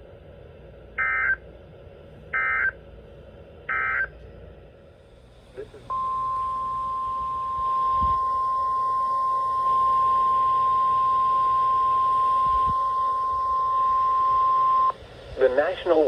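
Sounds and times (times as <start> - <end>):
steady alarm beep: 3.7 - 4.1, 5.9 - 15.0.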